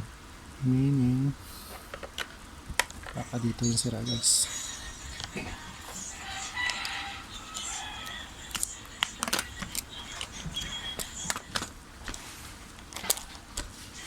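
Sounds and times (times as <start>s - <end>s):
faint high chirping: 3.2s - 8.8s.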